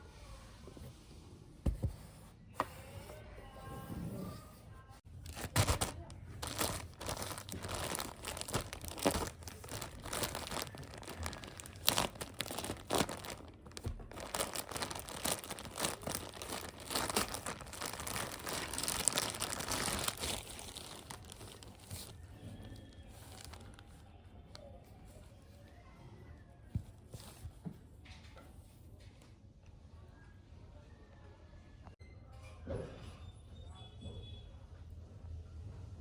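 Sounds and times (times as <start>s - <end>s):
packaging crinkling and tearing: 5.1s - 24.0s.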